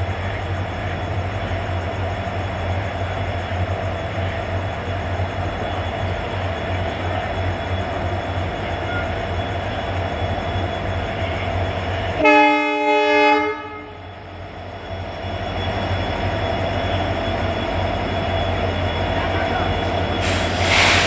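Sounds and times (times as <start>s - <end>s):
diesel locomotive humming: 0.0s - 21.0s
locomotive air horn blast: 12.2s - 14.0s, 20.2s - 21.0s.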